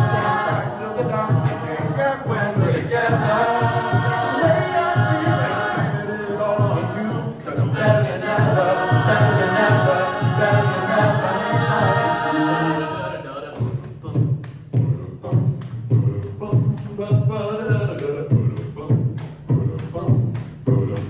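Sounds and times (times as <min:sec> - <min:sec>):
low pulsing beat: 0:00.0 - 0:12.8
choir singing held chords: 0:00.0 - 0:13.6.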